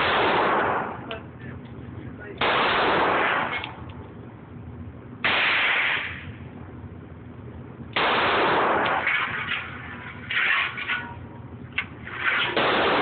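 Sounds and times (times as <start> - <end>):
pistol shots: 0.0 - 1.1, 2.4 - 3.8, 5.2 - 6.3, 8.0 - 9.6, 12.2 - 13.0.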